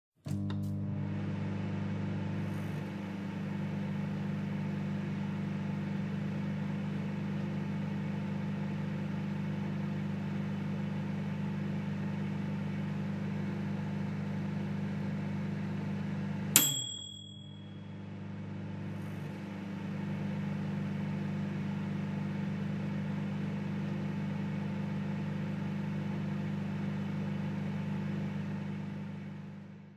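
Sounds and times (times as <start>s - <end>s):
microwave oven humming: 0.2s - 29.9s
sharp click with high ring: 16.6s - 17.9s.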